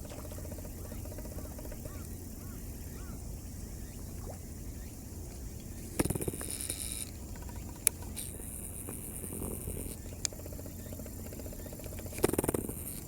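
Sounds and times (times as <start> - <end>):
faint chirps: 0.6 - 5.0.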